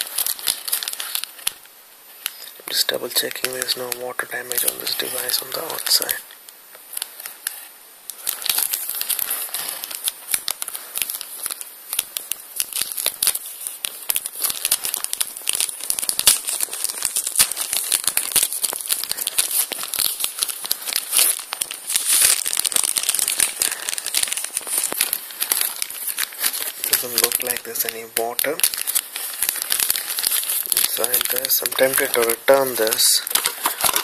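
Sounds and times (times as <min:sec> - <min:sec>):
plastic packaging crinkling: 0:00.0 - 0:34.0.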